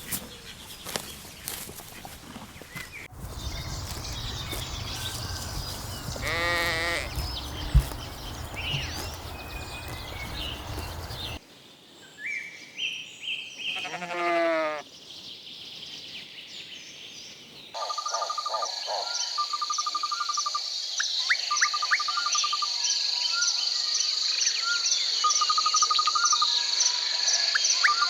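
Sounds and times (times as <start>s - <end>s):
bird chirps: 0.0s - 11.4s
lambs bleating: 3.3s - 10.8s, 13.7s - 14.8s.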